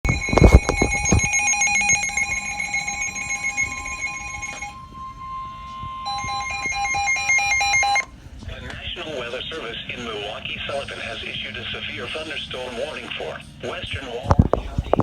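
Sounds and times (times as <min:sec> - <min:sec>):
steady warning tone: 0:00.0 - 0:08.2
shrill rapidly pulsing alert beep: 0:00.1 - 0:08.1.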